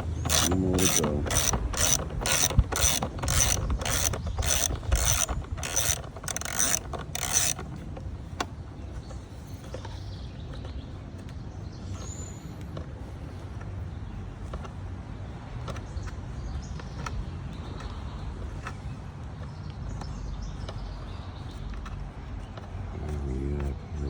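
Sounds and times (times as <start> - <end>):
ratcheting driver clicking: 0.0 - 7.8.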